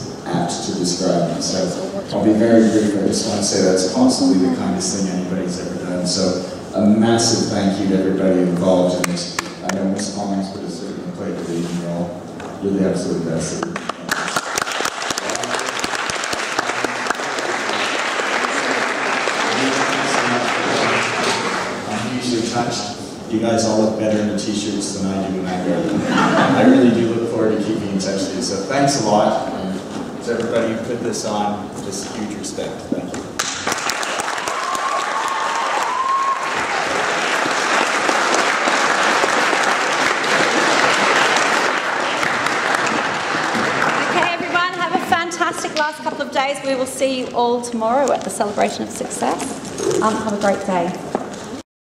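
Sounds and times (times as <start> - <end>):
audience applauding: 13.6 - 22.0, 33.4 - 44.8.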